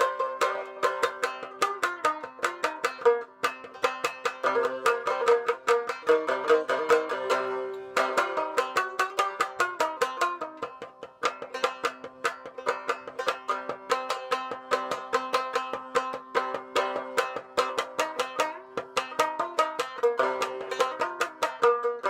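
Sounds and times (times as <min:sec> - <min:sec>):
shamisen plucked notes: 0:00.0 - 0:22.0.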